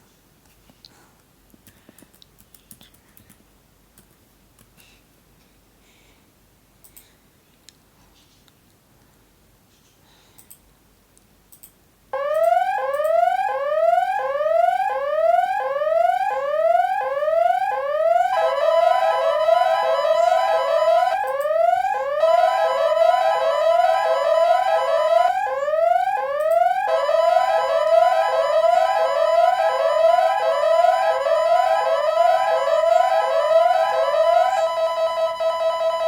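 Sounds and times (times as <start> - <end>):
faint clicks: 6.8 - 7.1
steady tone: 12.2 - 36.0
whooping emergency alarm: 12.2 - 36.0.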